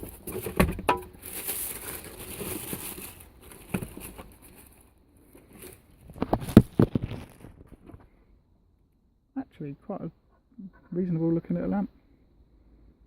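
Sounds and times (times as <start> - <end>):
packaging crinkling and rustling: 0.0 - 8.0.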